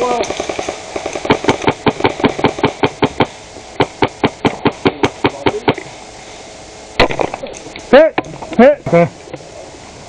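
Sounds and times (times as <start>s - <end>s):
airsoft gun firing rapid shots: 0.0s - 5.8s.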